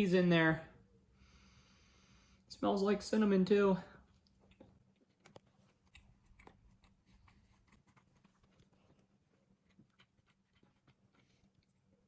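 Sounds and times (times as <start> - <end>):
faint steady hum: 0.0 - 12.0
chewing with mouth clicks: 4.0 - 12.0.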